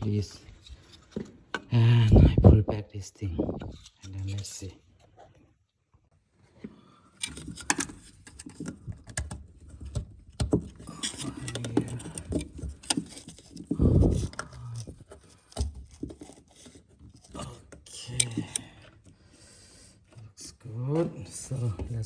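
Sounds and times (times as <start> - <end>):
clicks and rattles of parts: 6.6 - 19.3.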